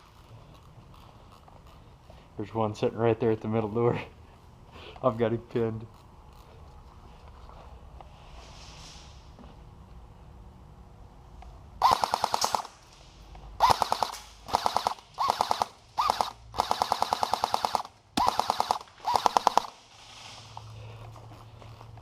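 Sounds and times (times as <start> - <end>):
airsoft gun firing bursts: 11.8 - 12.8, 13.6 - 19.8.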